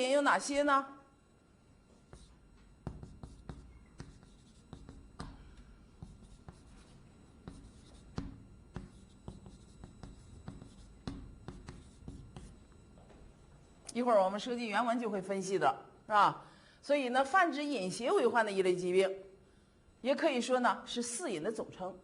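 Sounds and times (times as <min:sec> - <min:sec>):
writing on a board: 0:02.0 - 0:12.8.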